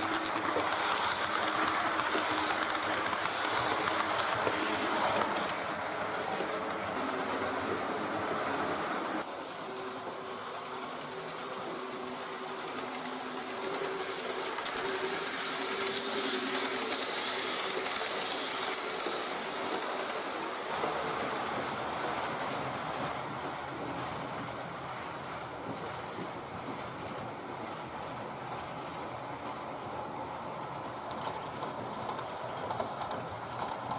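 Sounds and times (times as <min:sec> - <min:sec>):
model train motor hum: 0:00.0 - 0:22.6
wheels rolling on track: 0:00.0 - 0:33.9.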